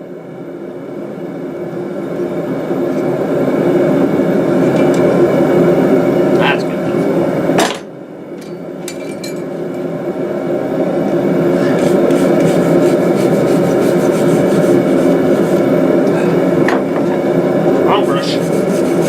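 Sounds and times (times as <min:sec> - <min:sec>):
steady low drone: 0:10.0 - 0:19.0.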